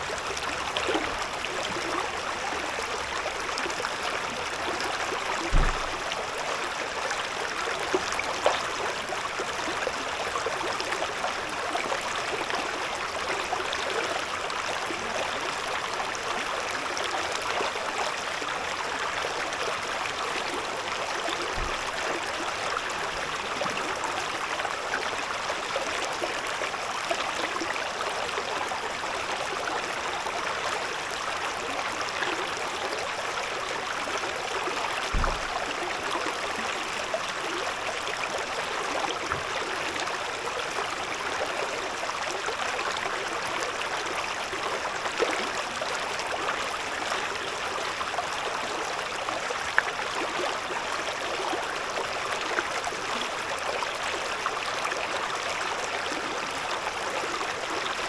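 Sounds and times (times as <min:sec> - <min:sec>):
river babbling over stones: 0:00.0 - 0:58.0
brief low thump: 0:05.5 - 0:06.0, 0:21.6 - 0:21.8, 0:35.1 - 0:35.6.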